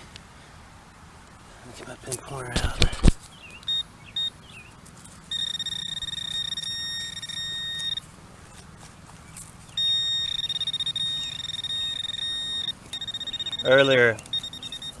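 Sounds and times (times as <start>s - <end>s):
pinpointer high-pitched tone: 5.3s - 8.0s, 9.8s - 15.0s.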